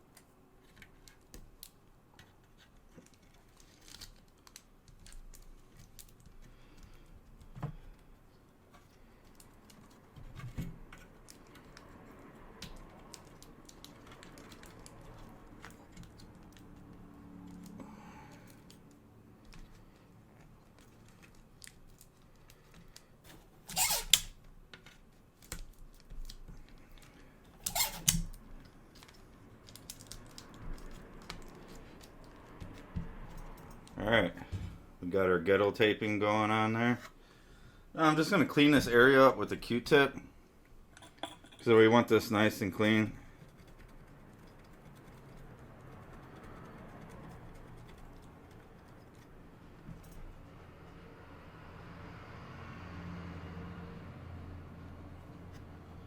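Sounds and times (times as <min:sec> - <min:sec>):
tape ripping off a roll: 0:03.3 - 0:06.7, 0:21.1 - 0:24.4, 0:27.6 - 0:28.4.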